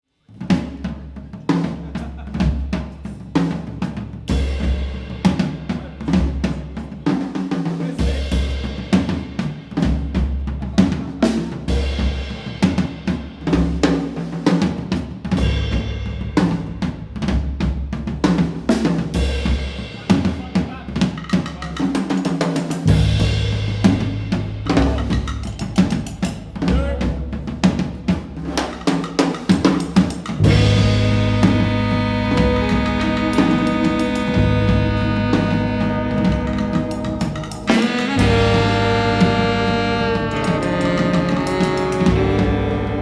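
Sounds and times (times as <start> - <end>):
drum kit beat: 0.3 - 43.0
sustained bass notes: 30.4 - 43.0.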